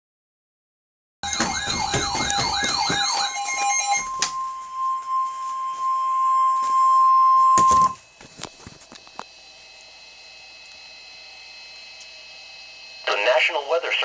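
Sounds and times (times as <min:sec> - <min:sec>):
warbling alert tone: 0:01.2 - 0:07.0
long high alarm beep: 0:01.2 - 0:14.0
steady lower tone: 0:01.3 - 0:08.2.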